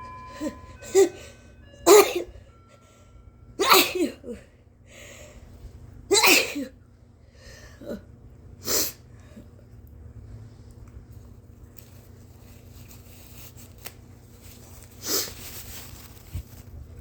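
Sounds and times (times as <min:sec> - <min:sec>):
woman sneezing: 0:03.6 - 0:04.2, 0:06.1 - 0:06.7.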